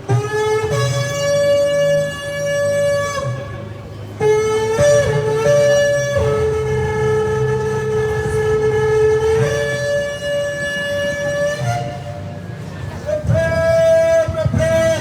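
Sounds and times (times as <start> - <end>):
shofar blasts: 13.0 - 15.0.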